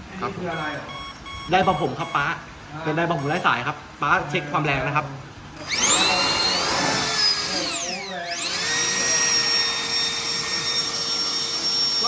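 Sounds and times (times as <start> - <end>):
hair dryer motor whining: 5.6 - 12.0.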